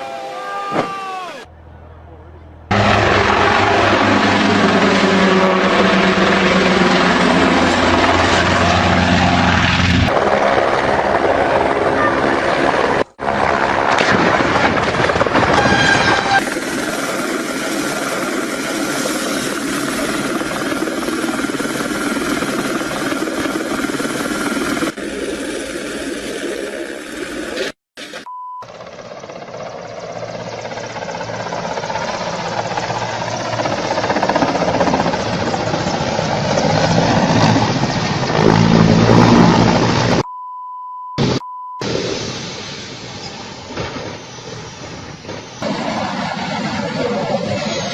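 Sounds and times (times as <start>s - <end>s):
helicopter engine and rotor: 2.7s - 13.9s, 15.0s - 27.6s, 28.6s - 40.3s, 44.6s - 47.9s
steady beep: 28.2s - 28.7s, 40.2s - 41.8s.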